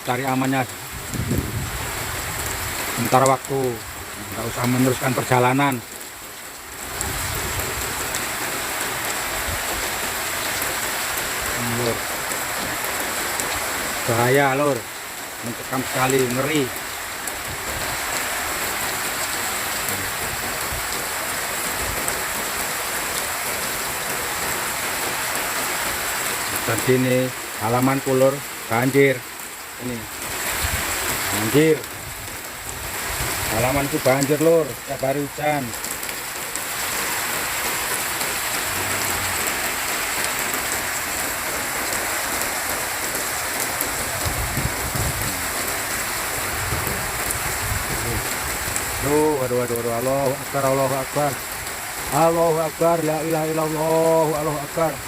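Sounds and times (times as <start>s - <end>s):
heavy rain pouring: 0.0s - 55.0s.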